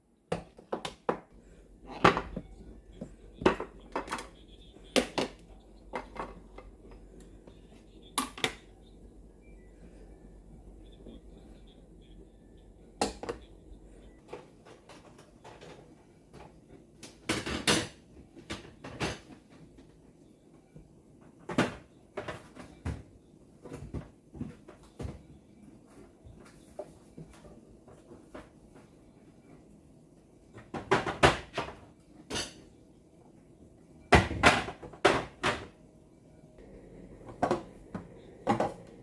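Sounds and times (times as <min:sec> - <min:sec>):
dishes knocking and clattering: 0:00.3 - 0:08.8, 0:17.2 - 0:19.4, 0:30.6 - 0:32.7, 0:34.1 - 0:35.8, 0:36.6 - 0:39.0.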